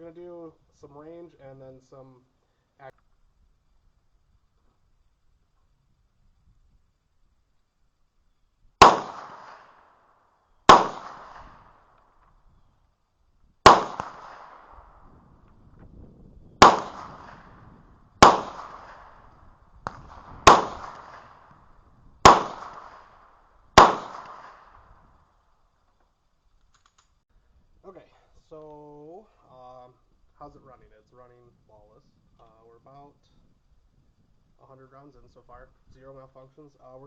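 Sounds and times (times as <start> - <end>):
pistol shots echoing: 8.8 - 9.9, 10.7 - 11.8, 13.6 - 14.9, 16.6 - 17.6, 18.2 - 21.5, 22.2 - 23.2, 23.8 - 24.8
sharp click: 26.6 - 27.2.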